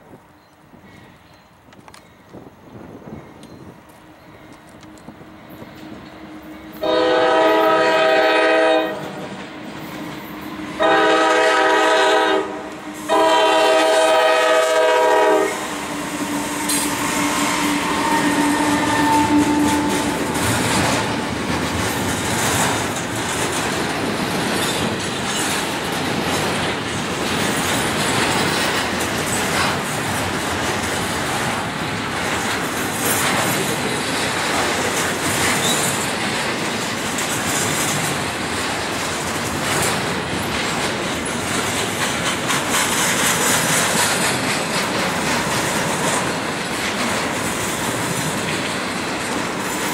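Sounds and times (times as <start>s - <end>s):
train rumbling past: 0.0s - 49.9s
wheels clacking over rail joints: 0.4s - 49.9s
locomotive air horn blasts: 6.7s - 9.2s, 10.8s - 20.3s.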